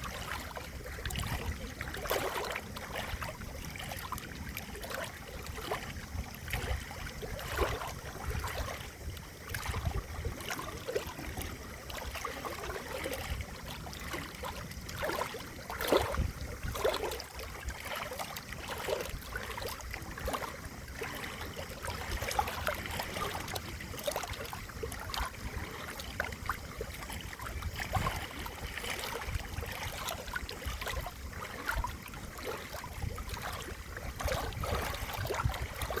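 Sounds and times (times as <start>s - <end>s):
water splash: 0.0s - 4.2s, 4.8s - 8.9s, 13.8s - 36.0s
water trickling and gurgling: 0.0s - 36.0s.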